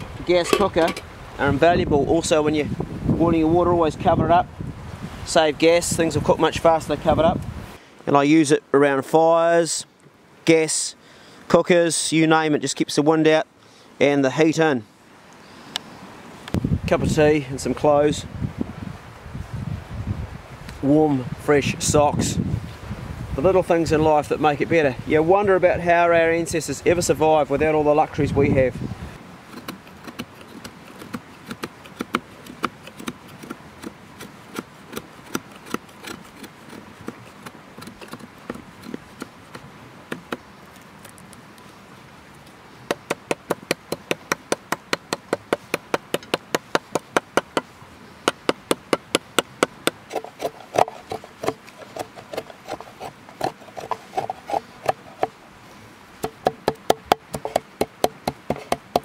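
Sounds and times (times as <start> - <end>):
hard object knocking on wood: 56.2 - 59.0.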